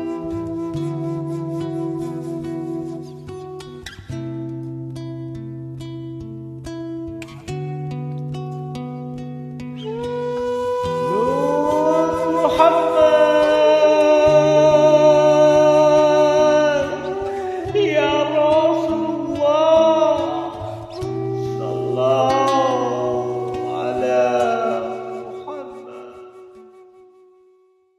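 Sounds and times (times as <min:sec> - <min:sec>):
devotional singing: 0:10.7 - 0:26.5.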